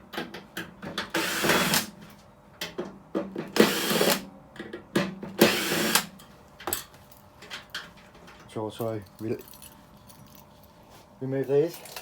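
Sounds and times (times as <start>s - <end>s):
cordless drill whirring: 1.2s - 1.9s, 3.6s - 4.2s, 5.4s - 6.0s
clicks and knocks of tools: 11.5s - 12.0s.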